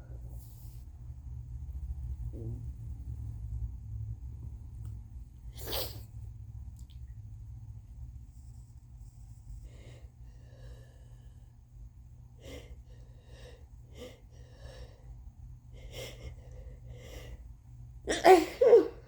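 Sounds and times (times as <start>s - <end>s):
woman sneezing loudly: 18.1s - 19.0s.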